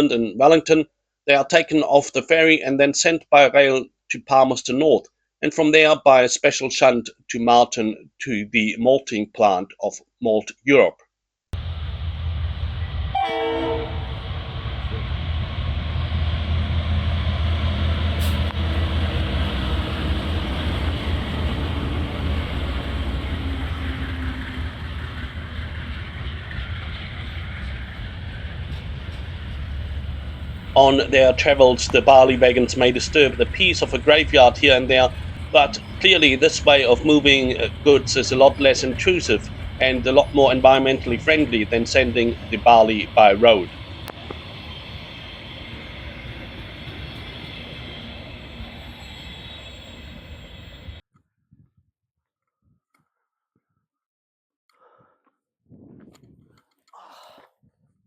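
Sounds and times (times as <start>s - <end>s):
freight train rumbling past: 11.6s - 51.0s
faint high whine: 29.5s - 51.0s.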